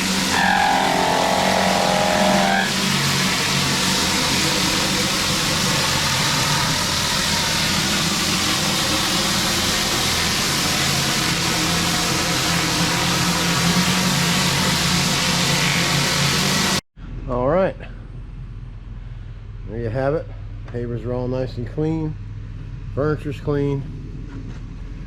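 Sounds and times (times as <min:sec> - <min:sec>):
gas engine running: 0:00.0 - 0:16.8
high-pressure water spray hissing: 0:00.0 - 0:16.8
high whine: 0:00.0 - 0:25.0.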